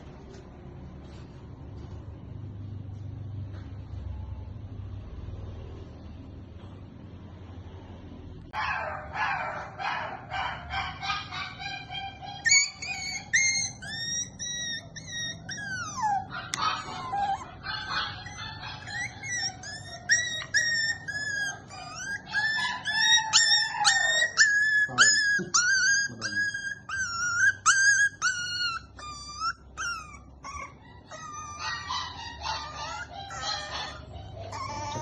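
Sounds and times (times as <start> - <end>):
small animal squealing: 11.6 - 35.0.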